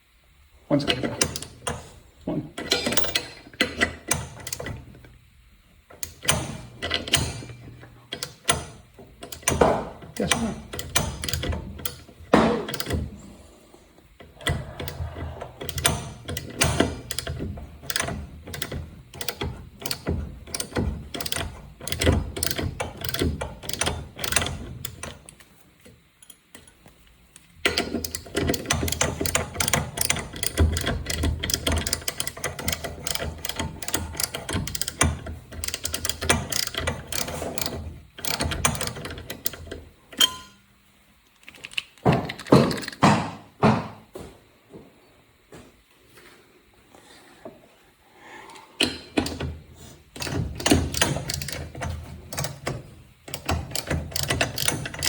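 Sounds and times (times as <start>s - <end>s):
socket ratchet clicking: 2.6s - 4.8s, 6.0s - 13.0s, 14.2s - 25.4s, 27.4s - 40.6s, 50.2s - 55.0s.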